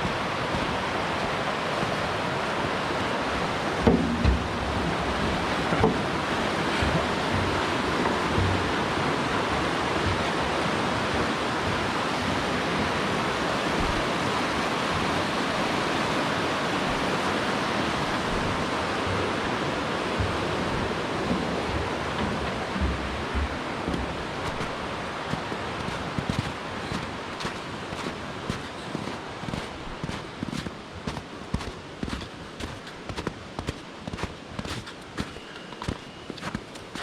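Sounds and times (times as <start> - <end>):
fast-flowing creek water: 0.0 - 37.0
faint low thumps: 3.8 - 10.4, 18.3 - 25.2.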